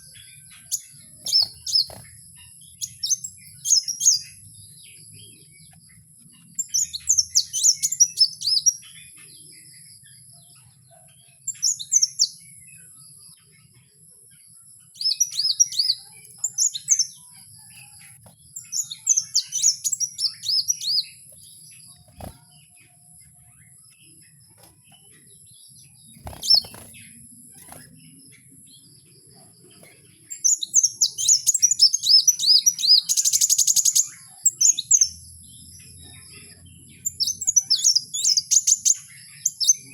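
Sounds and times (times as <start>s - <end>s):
bird chirping: 0.0s - 39.9s.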